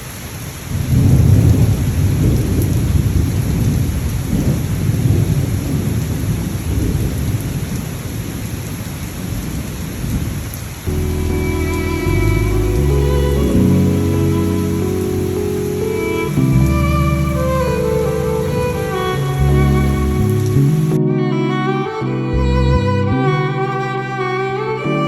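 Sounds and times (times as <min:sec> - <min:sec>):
steady rain: 0:00.0 - 0:25.0
rolling thunder: 0:00.7 - 0:08.6
music: 0:10.9 - 0:25.0.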